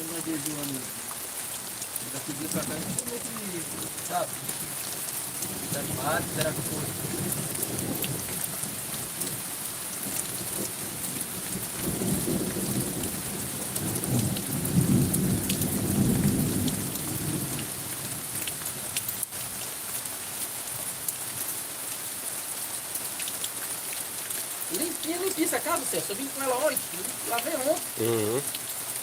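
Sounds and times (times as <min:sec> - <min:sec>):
drips ticking: 0:00.0 - 0:06.6
rain falling: 0:00.0 - 0:29.0.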